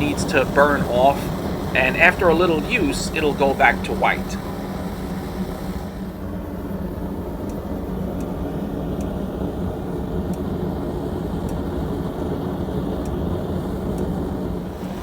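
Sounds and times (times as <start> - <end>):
gas burner rumbling: 0.0 - 15.0
faint light ticks: 8.2 - 8.4, 9.0 - 9.2, 13.9 - 14.1.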